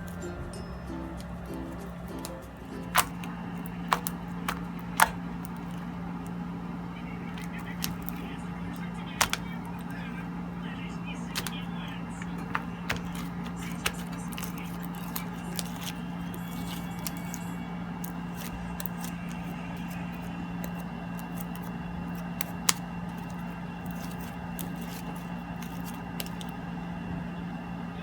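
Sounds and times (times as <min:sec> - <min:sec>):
low background hum: 0:00.0 - 0:28.0
slime clicking and popping: 0:09.2 - 0:09.5.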